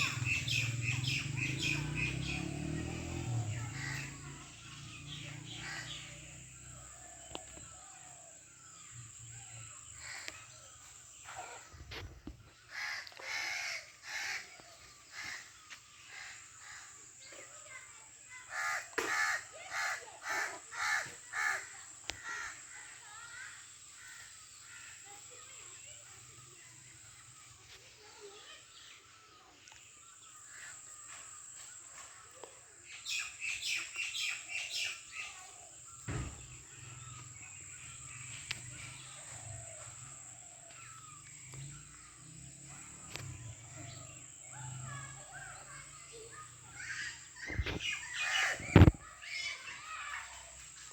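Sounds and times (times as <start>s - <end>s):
small birds chirping: 0.0s - 50.9s
crows cawing: 12.7s - 16.9s, 18.5s - 22.9s.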